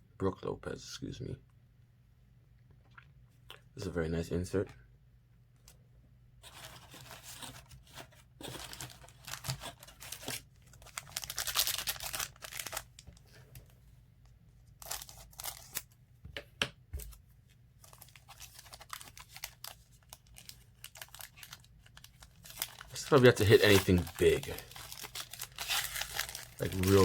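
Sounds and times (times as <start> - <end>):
foil wrapper crinkling and tearing: 8.4 - 13.1, 14.8 - 16.0, 17.8 - 27.0
cards being handled: 22.4 - 27.0.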